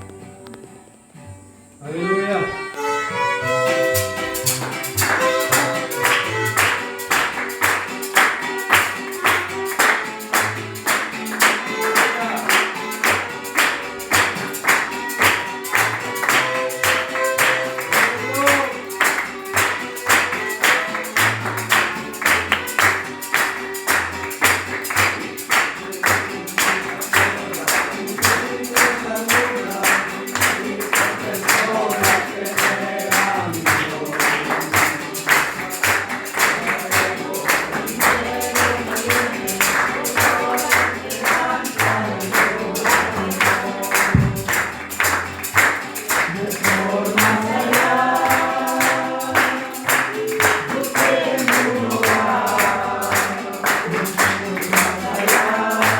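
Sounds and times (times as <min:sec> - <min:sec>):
violins playing: 0:01.8 - 0:25.0
quick rhythmic beat: 0:02.7 - 0:55.9.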